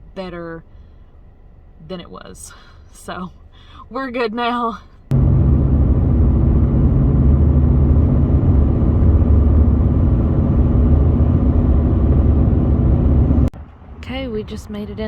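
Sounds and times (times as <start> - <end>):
car engine and road drone: 5.1 - 14.0.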